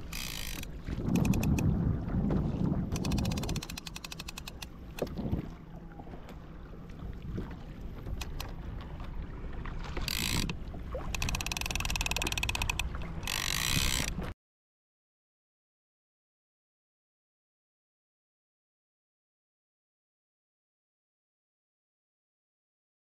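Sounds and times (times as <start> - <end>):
fishing reel ratchet clicking: 0.0 - 1.6, 3.0 - 4.7, 10.0 - 14.2
water and wind noise: 0.0 - 14.4.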